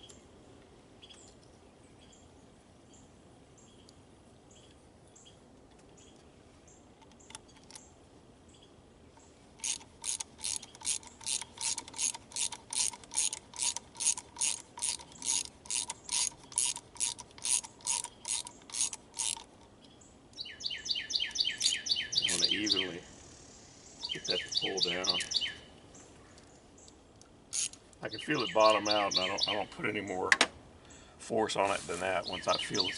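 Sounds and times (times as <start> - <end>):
ratchet wrench clicking: 9.6 - 19.6, 27.5 - 27.8.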